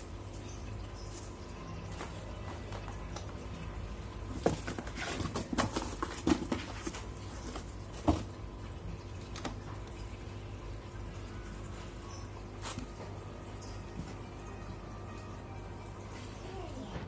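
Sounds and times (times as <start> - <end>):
cat scratching cardboard box: 4.4 - 8.3.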